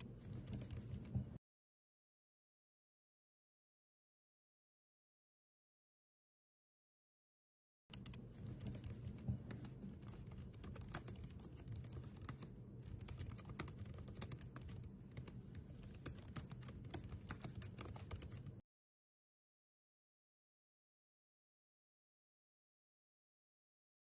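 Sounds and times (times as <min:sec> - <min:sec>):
low steady hum: 0:00.0 - 0:01.4, 0:07.9 - 0:18.6.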